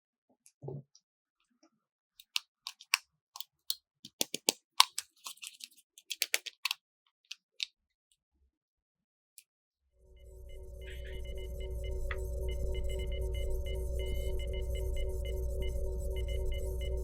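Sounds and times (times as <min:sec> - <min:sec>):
plastic toy pieces clicking: 0:02.2 - 0:07.7.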